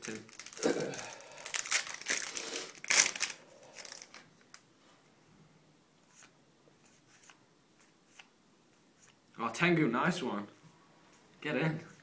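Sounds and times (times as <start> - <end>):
foil wrapper tearing and crinkling: 0.0 - 4.2
cards rustling and ticking: 0.0 - 4.6.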